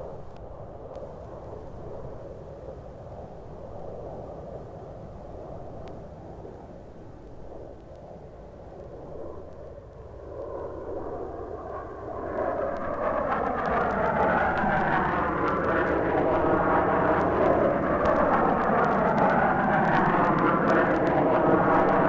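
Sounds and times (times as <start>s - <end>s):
faint record clicks: 0.2s - 1.8s, 5.8s - 6.7s, 7.3s - 10.8s, 12.3s - 22.0s
aircraft engine drone: 10.5s - 22.0s.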